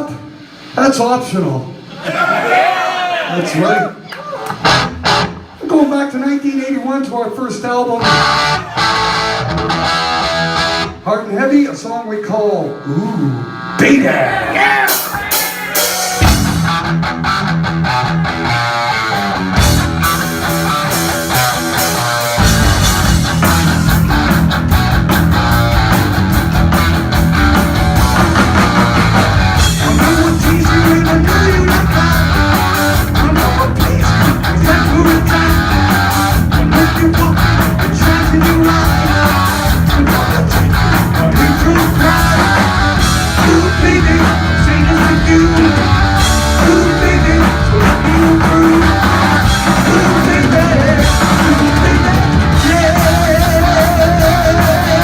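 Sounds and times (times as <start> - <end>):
electric guitar riff: 4.5 - 5.6, 8.0 - 11.0, 12.7 - 55.0
heavy metal band playing live: 4.5 - 5.8, 8.0 - 11.0, 12.7 - 55.0
drums and bass: 4.5 - 6.0, 7.5 - 11.1, 12.6 - 55.0.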